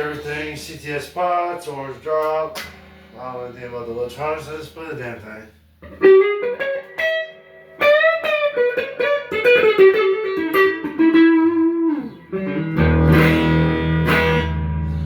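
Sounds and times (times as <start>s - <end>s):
electric guitar lead line: 5.8s - 15.0s.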